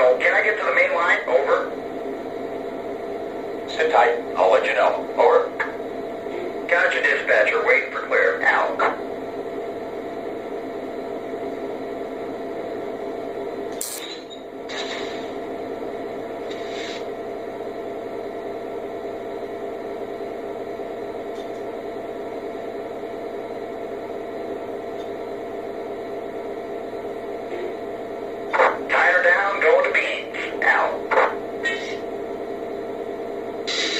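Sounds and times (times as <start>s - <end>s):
diesel locomotive idling: 15.2s - 33.9s.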